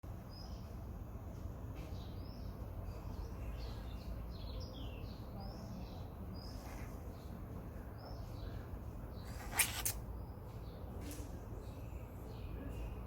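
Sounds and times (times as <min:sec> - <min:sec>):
small birds chirping: 0:00.1 - 0:13.0.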